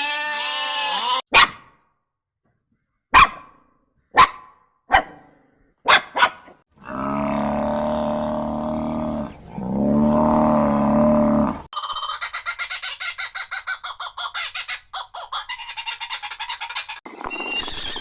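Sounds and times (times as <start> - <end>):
dog barking: 1.3 - 1.7, 3.1 - 6.6
large animal low calls: 6.8 - 11.7.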